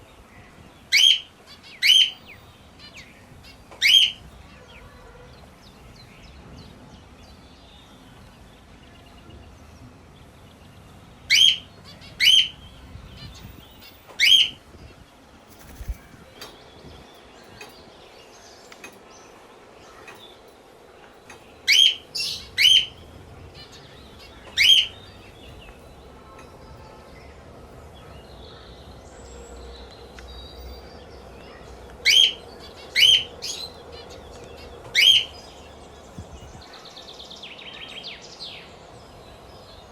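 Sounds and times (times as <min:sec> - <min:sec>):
faint bird chatter: 0:00.0 - 0:39.9
parrot shrill calls: 0:03.8 - 0:04.2, 0:11.3 - 0:12.6.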